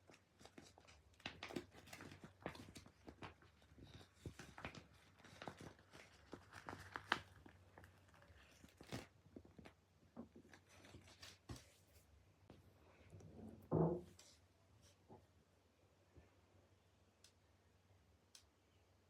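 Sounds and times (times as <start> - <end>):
crinkly rustling: 0.0 - 12.2.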